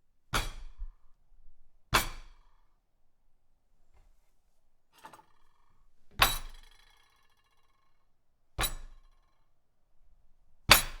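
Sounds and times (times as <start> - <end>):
tableware ringing and clinking: 5.0 - 5.4.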